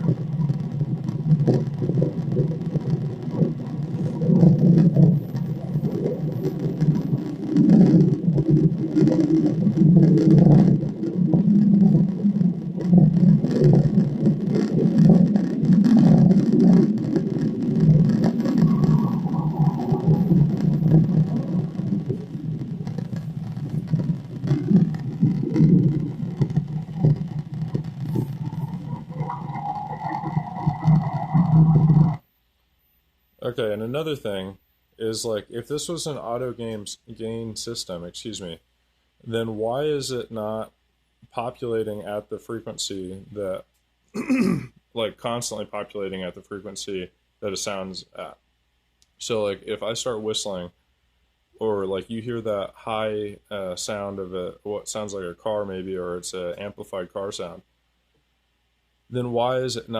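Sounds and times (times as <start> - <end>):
higher hum: 0.0 - 32.3
low steady rumble: 0.0 - 44.0.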